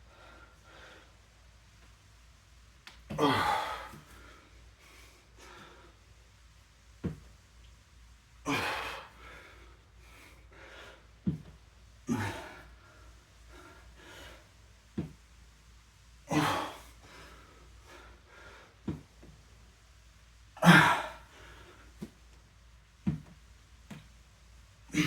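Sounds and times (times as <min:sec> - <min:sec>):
man gasping breaths: 0:03.1 - 0:06.0, 0:08.5 - 0:11.5, 0:12.1 - 0:14.6.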